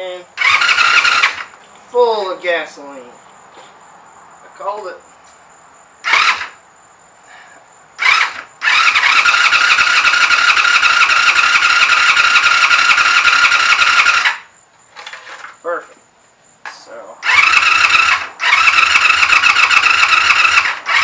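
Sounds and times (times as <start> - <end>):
starter motor cranking engine: 0.4 - 1.5, 6.0 - 6.5, 8.0 - 14.5, 17.2 - 21.0.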